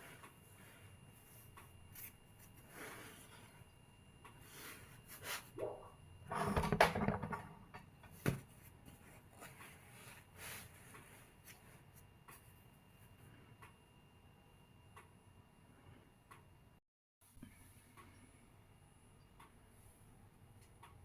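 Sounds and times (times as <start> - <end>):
rustling of things handled: 8.0 - 13.2.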